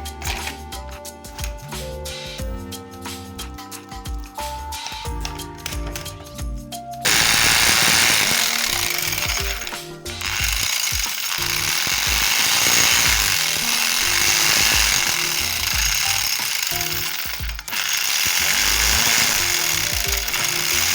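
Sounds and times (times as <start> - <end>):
background music with beat: 0.0 - 20.9
power tool grinding steel: 7.0 - 20.9.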